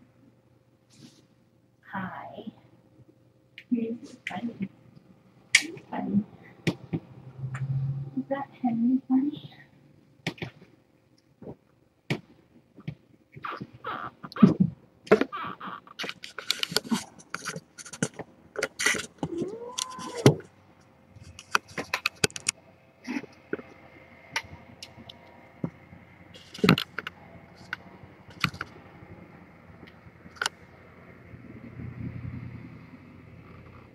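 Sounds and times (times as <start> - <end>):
faint steady hum: 0.0 - 33.9
objects handled near microphone: 14.4 - 20.5, 21.1 - 22.6
rising and falling call: 19.2 - 20.4.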